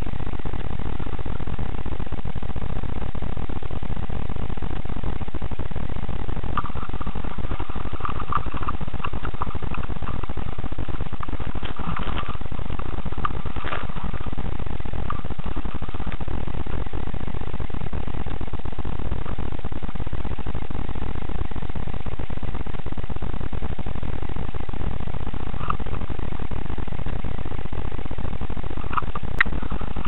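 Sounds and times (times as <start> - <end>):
low rumbling noise: 0.0 - 30.0
faint clicks and taps: 6.5 - 16.9.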